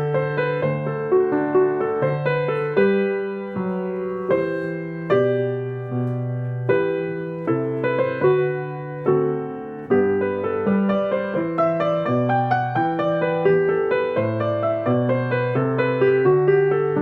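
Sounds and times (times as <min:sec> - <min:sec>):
slow solo piano piece: 0:00.0 - 0:17.0.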